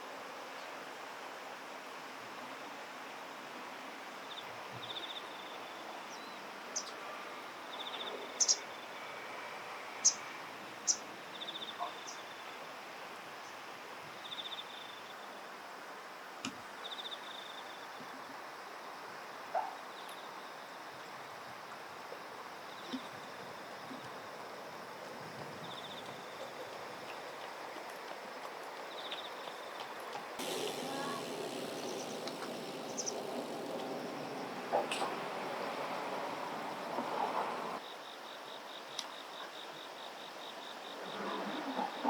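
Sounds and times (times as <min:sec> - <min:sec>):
flowing water hiss: 0:29.6 - 0:37.8
faint clicks: 0:29.8 - 0:37.8
short high trill: 0:30.4 - 0:34.7.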